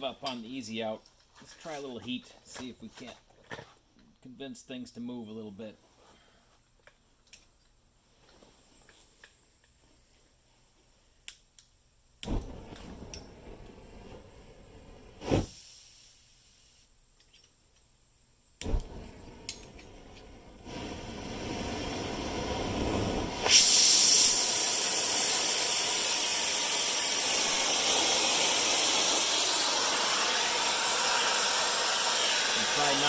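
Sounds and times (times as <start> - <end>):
gas torch burning with loud hiss: 8.5 - 17.0, 18.2 - 33.0
gas hissing from valve: 12.2 - 16.9, 18.6 - 33.0.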